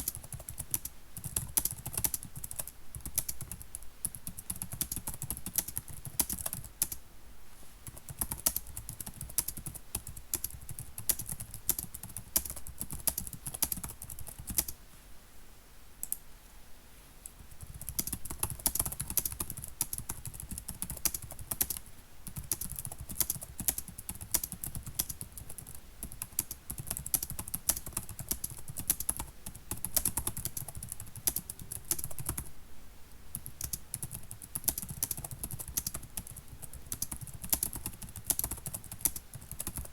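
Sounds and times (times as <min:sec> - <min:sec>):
keyboard typing clicks: 0:00.0 - 0:07.0, 0:17.3 - 0:32.5, 0:33.4 - 0:39.9.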